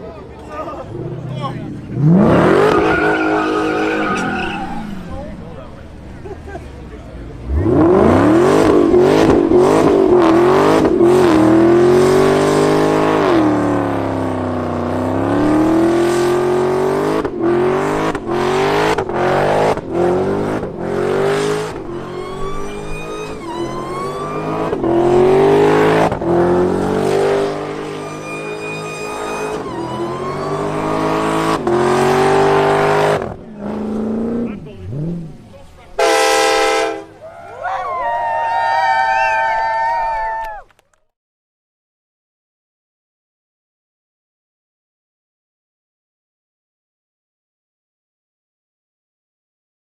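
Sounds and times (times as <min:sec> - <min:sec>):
car engine revving hard: 0:00.9 - 0:05.3, 0:07.4 - 0:37.1.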